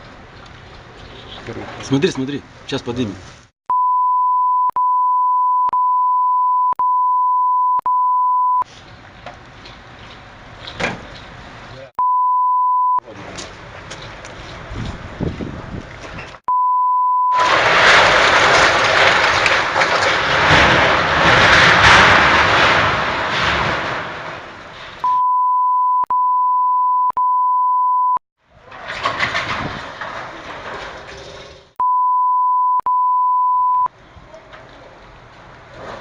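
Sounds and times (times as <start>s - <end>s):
censor bleep tone: 3.7s - 8.6s, 12.0s - 13.0s, 16.5s - 17.4s, 25.0s - 28.2s, 31.8s - 33.9s
gusty wind on microphone: 14.6s - 16.4s.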